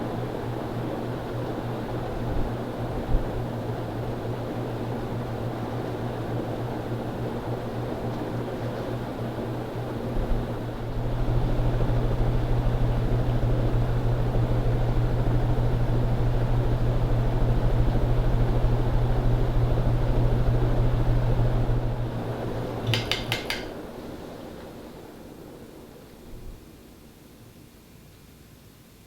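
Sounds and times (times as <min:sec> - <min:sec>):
ceiling fan motor humming: 0:00.0 - 0:28.4
fan blades whooshing: 0:10.1 - 0:24.8.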